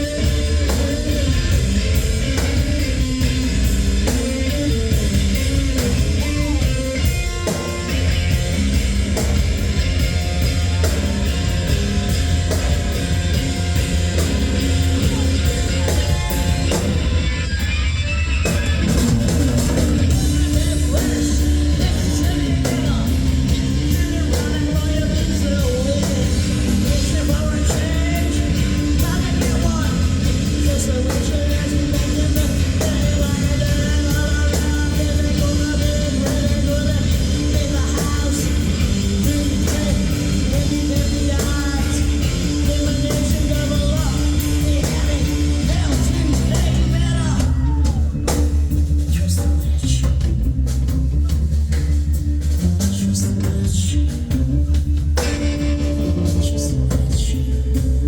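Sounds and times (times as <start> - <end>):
person singing: 0.0 - 8.3, 14.1 - 17.2, 19.7 - 48.4
rock band playing live: 0.0 - 58.0.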